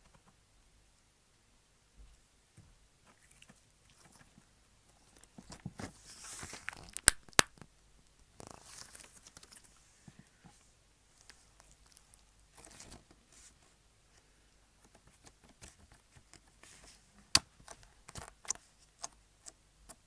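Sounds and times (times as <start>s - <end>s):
slime stretched and squished: 5.0s - 7.7s, 8.4s - 9.8s
sticky crackling and tearing: 6.2s - 7.7s.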